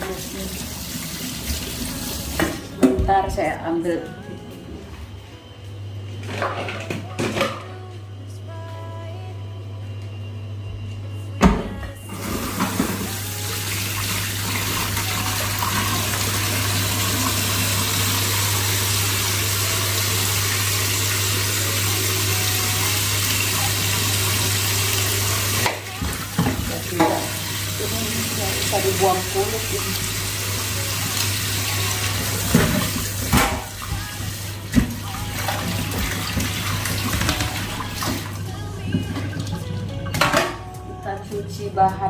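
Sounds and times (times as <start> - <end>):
tap running water into sink: 12.2 - 22.0, 22.8 - 38.3.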